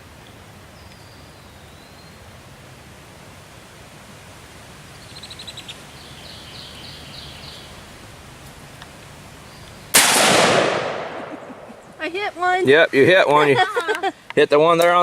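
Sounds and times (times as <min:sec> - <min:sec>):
birds chirping: 0:04.9 - 0:08.0, 0:09.3 - 0:09.9, 0:10.8 - 0:15.0
rifle shot with echo: 0:09.9 - 0:11.8.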